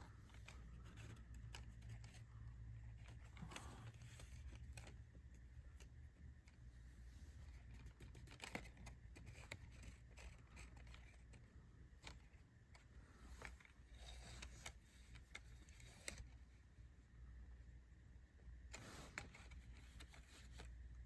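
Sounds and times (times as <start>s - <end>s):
handling clicks and rustles: 0.0s - 16.6s
low steady hum: 0.0s - 21.0s.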